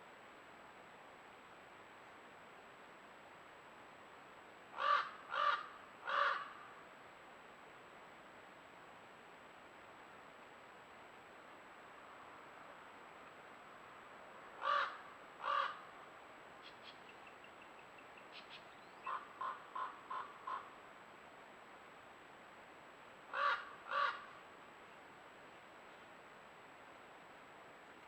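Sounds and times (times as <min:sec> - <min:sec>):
crow cawing: 0:04.8 - 0:06.6, 0:14.6 - 0:15.8, 0:19.0 - 0:20.7, 0:23.3 - 0:24.4.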